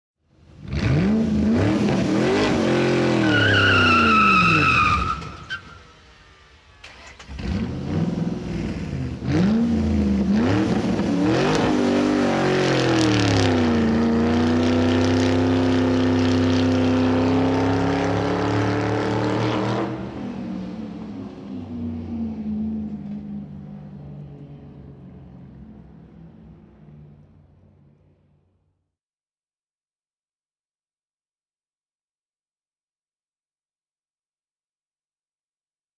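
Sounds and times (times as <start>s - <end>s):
car engine revving: 0.5s - 28.4s
tyre squeal: 2.9s - 6.0s.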